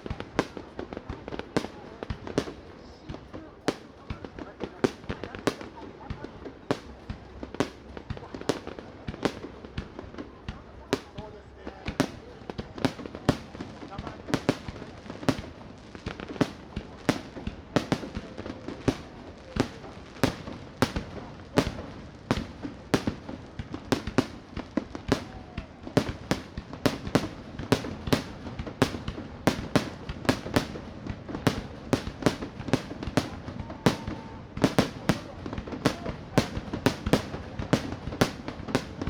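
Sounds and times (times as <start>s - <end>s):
crowd murmur: 0.0s - 39.0s
fireworks bangs: 0.0s - 39.0s.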